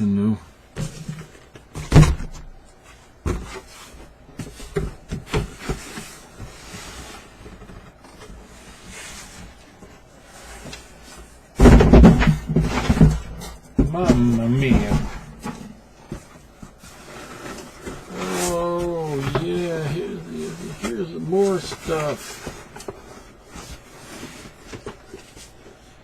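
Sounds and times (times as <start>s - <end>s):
boxes knocking: 11.5s - 25.3s.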